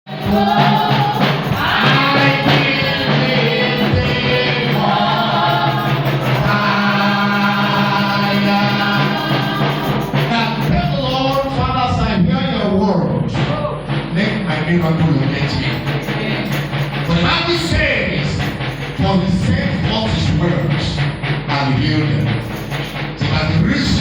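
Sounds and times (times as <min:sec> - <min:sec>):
keyboard or organ chords: 0:00.0 - 0:24.0
voices singing gospel: 0:00.0 - 0:24.0.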